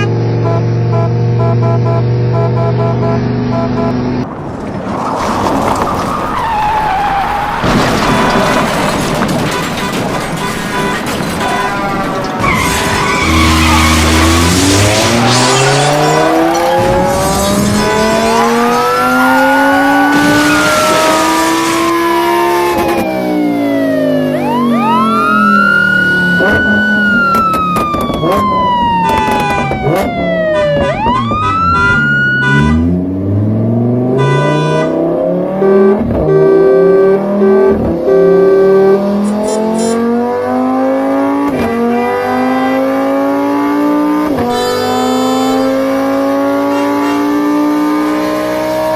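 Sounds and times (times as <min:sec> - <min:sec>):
car engine revving: 0:00.0 - 0:48.9
siren-like wail: 0:05.8 - 0:08.9, 0:11.4 - 0:32.9, 0:44.0 - 0:48.0.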